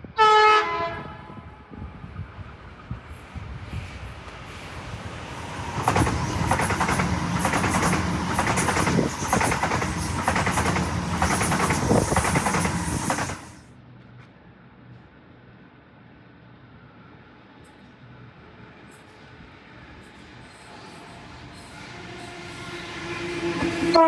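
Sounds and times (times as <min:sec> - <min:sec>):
train passing with clatter: 0:00.6 - 0:24.0
background noise: 0:13.6 - 0:23.0.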